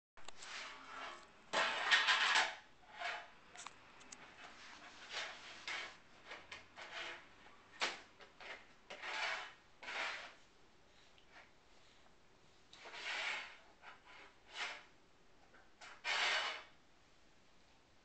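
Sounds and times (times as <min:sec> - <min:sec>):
rubbing or scraping noise: 0:00.2 - 0:10.5, 0:12.6 - 0:15.0, 0:15.8 - 0:16.8.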